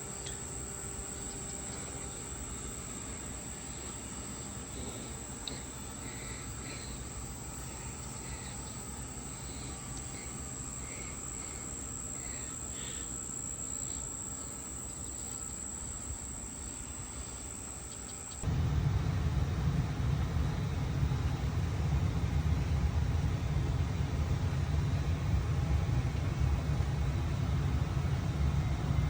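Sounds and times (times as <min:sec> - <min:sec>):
high-pitched insect trill: 0:00.0 - 0:18.5
low steady hum: 0:00.0 - 0:29.0
faint bird chirps: 0:01.1 - 0:18.4
loud low rumble: 0:18.4 - 0:29.0.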